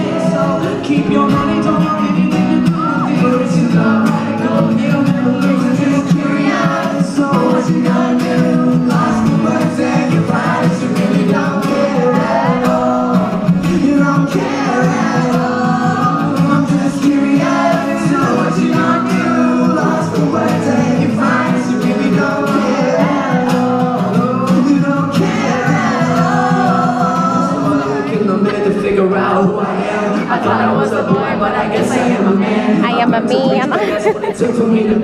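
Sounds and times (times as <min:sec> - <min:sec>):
live pop band music: 0:00.0 - 0:35.0
man singing: 0:00.0 - 0:35.0.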